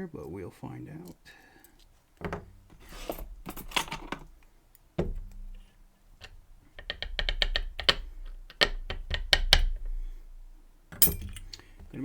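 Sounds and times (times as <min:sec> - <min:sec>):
metal clicks of lock parts: 0:01.0 - 0:10.0, 0:10.9 - 0:11.9
sharp metal taps: 0:03.7 - 0:12.0.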